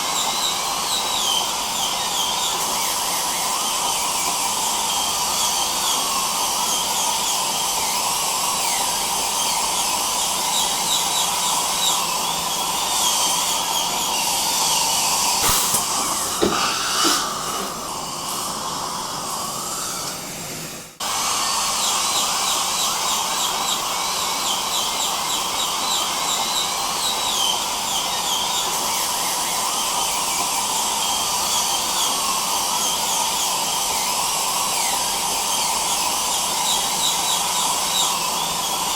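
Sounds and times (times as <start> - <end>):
dental drill whining: 0.0 - 38.9
dental suction hiss: 12.9 - 20.2.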